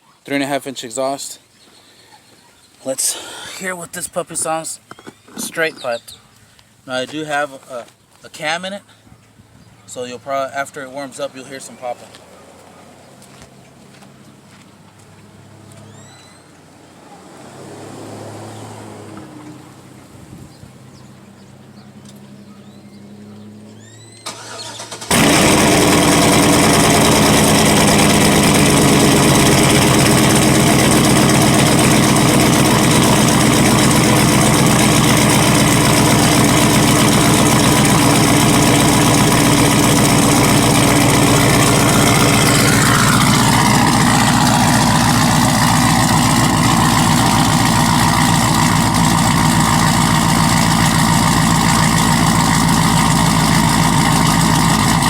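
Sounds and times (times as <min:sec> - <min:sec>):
engine cranking: 0:24.2 - 0:55.0
loud v eight engine idling: 0:24.4 - 0:55.0.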